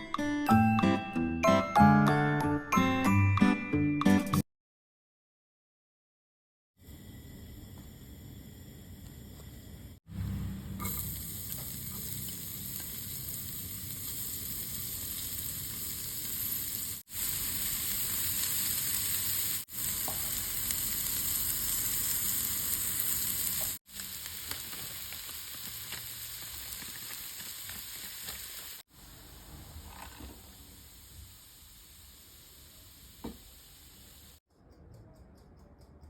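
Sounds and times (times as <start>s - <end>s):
food sizzling in hot oil: 10.1s - 34.4s.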